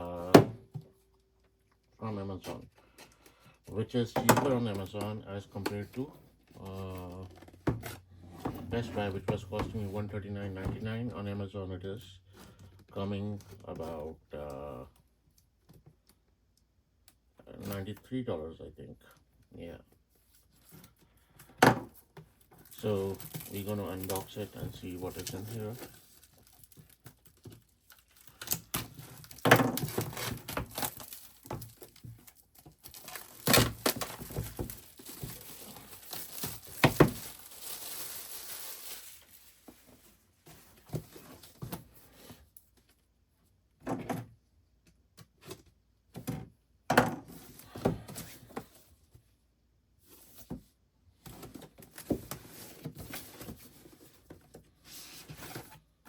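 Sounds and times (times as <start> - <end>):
packaging crinkling: 22.6 - 39.6.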